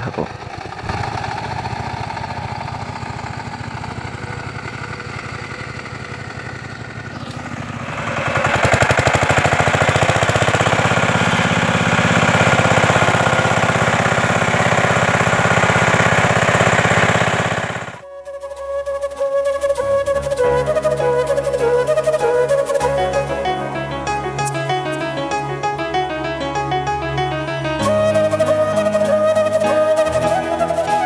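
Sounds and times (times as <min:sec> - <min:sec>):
ploughing machine engine running: 0:00.0 - 0:18.0.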